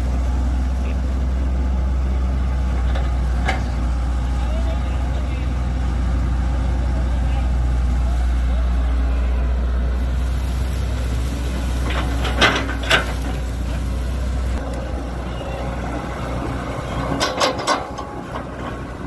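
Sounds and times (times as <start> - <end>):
heavy machinery engine running: 0.0 - 19.0
sharp metallic knocks: 17.1 - 18.6.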